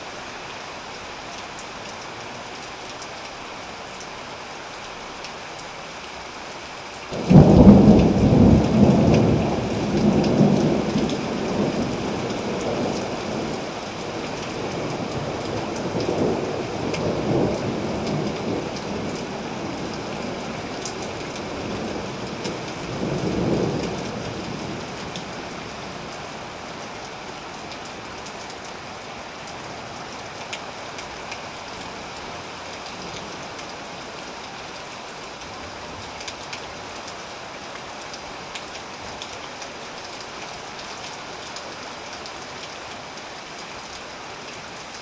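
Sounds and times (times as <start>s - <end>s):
steady rain falling: 0.0s - 45.0s
thunderclap rumbling: 7.1s - 13.4s.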